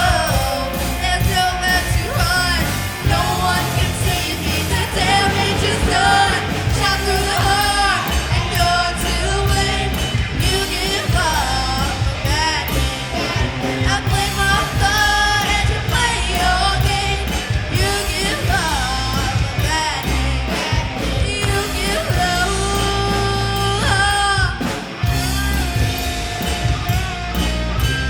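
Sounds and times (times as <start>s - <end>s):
bass guitar: 0.0s - 28.0s
drums: 0.0s - 28.0s
electric guitar: 0.0s - 28.0s
singer: 0.0s - 28.0s.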